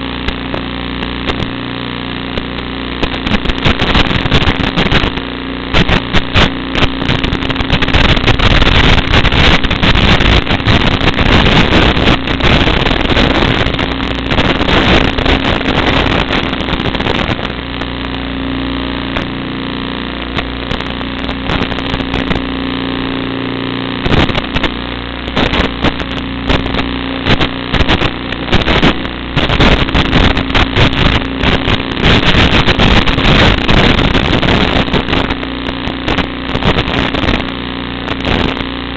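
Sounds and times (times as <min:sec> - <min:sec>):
wind rush over microphone: 0:00.2 - 0:38.9.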